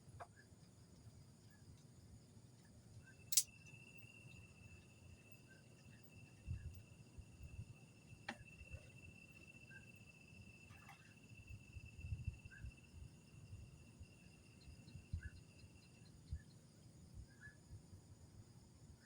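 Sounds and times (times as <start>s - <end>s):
cricket trilling: 0.0s - 19.0s
insect chirps: 0.0s - 19.0s
sharp clicks: 3.3s - 3.6s.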